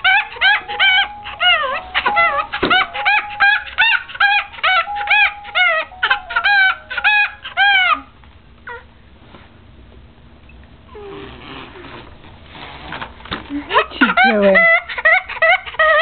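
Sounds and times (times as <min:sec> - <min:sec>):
baby laughing: 0:00.0 - 0:08.1, 0:13.7 - 0:16.0.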